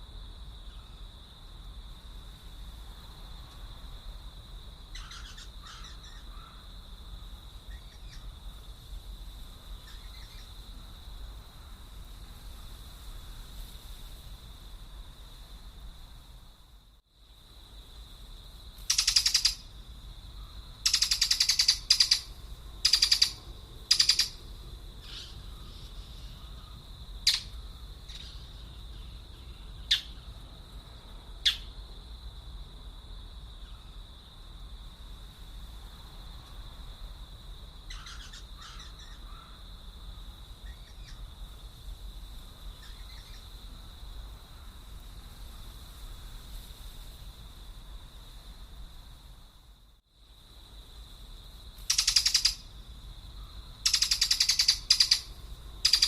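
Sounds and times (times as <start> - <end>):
faint bird chirps: 0.6 - 1.1, 4.9 - 6.6, 9.8 - 10.6, 18.9 - 19.6, 20.4 - 24.4, 25.0 - 30.4, 37.9 - 39.6, 42.8 - 43.5, 51.9 - 52.6, 53.4 - 56.0
harsh crow-like bird calls: 4.9 - 6.7, 37.9 - 39.6.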